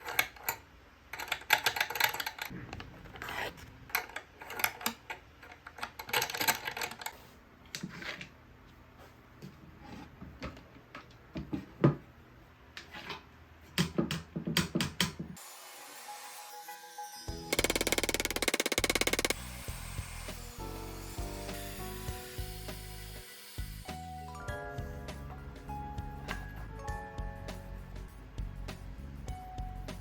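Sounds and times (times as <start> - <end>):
wooden lock clicking: 17.6 - 19.4.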